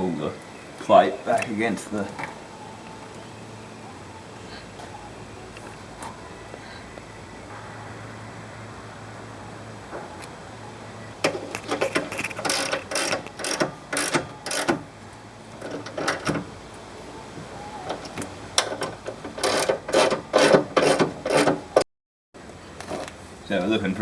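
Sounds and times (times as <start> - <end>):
ratchet wrench clicking: 11.5 - 14.8.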